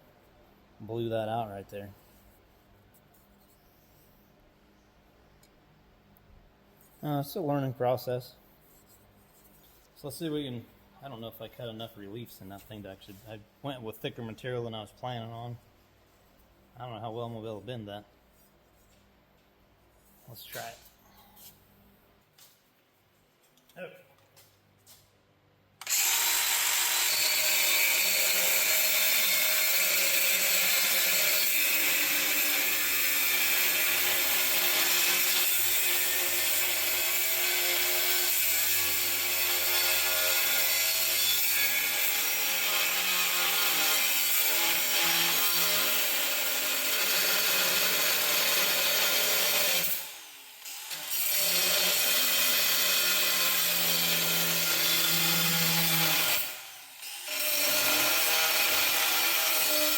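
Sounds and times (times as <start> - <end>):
angle grinder grinding steel: 25.8 - 59.9.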